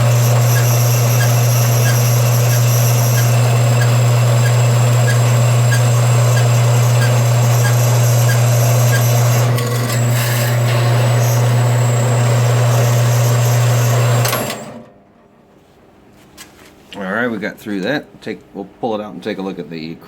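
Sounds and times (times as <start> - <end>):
saw blade rasping metal: 0.0 - 12.0
band saw motor hum: 0.0 - 14.8.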